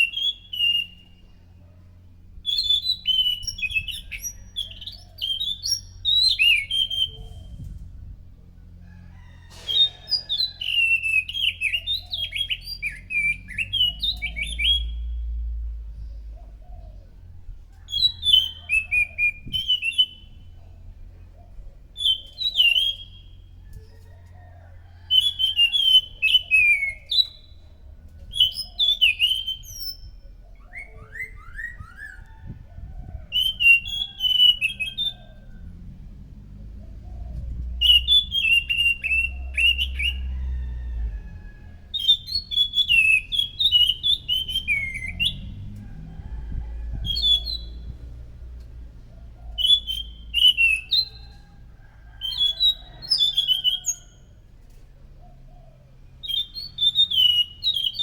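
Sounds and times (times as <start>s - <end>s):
low background rumble: 0.0s - 57.1s
falling whistles: 9.5s - 15.1s, 33.3s - 35.5s.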